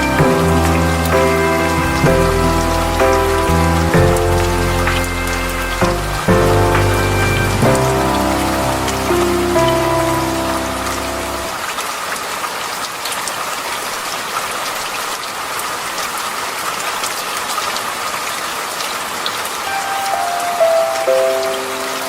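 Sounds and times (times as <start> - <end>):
soft sustained music notes: 0.0 - 11.6
steady rainfall: 0.0 - 22.0.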